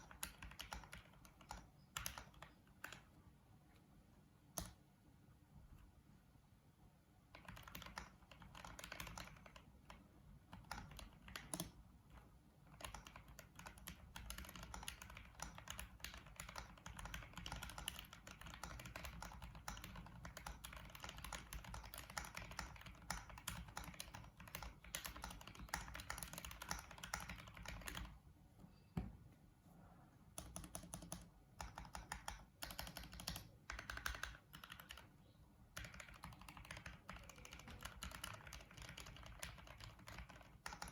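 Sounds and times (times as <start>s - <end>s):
typing on mechanical keyboard: 0.0s - 3.2s, 7.3s - 28.2s, 30.4s - 40.9s.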